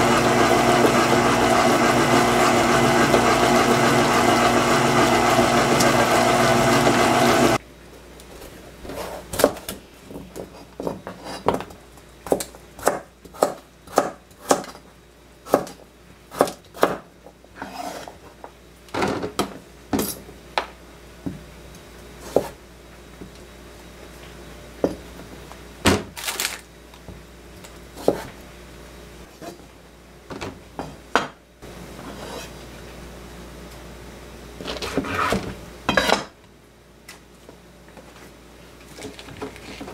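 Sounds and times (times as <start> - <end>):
loud motor-like hum: 0.0 - 7.6.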